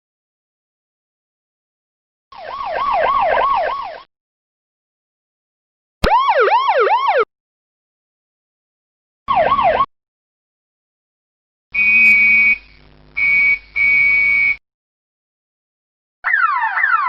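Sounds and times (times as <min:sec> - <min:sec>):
siren falling sweeps: 0:02.4 - 0:04.0, 0:06.0 - 0:07.3, 0:09.3 - 0:09.9, 0:16.2 - 0:17.0
high horn tone blasts: 0:11.8 - 0:14.6.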